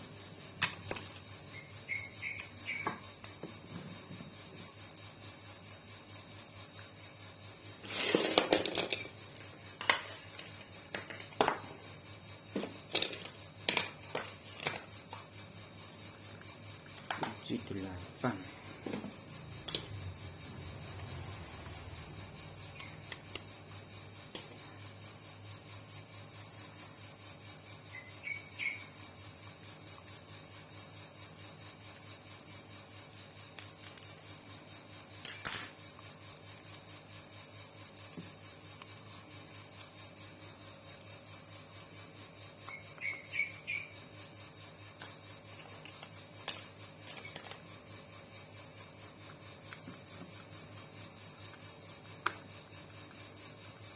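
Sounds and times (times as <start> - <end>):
hand tools clinking on metal: 35.3 - 35.8.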